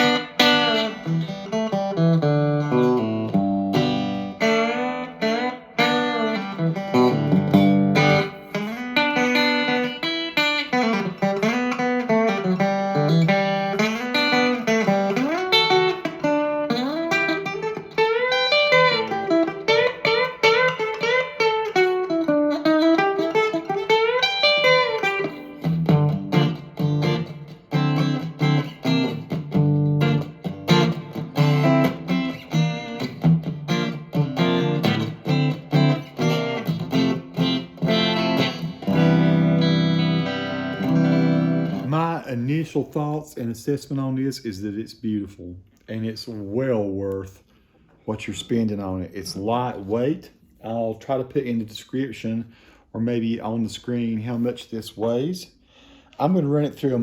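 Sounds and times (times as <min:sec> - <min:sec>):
clean electric guitar: 0:00.0 - 0:43.2.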